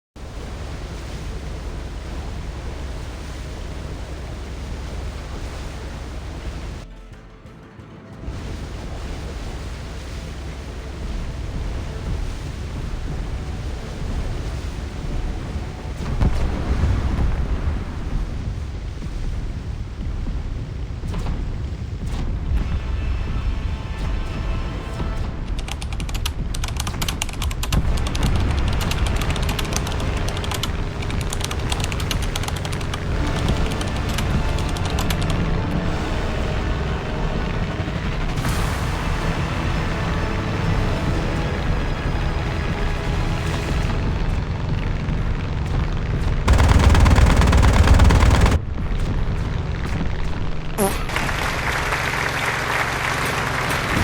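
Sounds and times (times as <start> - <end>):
seaplane engine rumble: 0.0 - 54.0
loud rapid rattling pulses: 22.6 - 54.0
rapid crackling clicks: 25.0 - 39.0, 40.3 - 54.0.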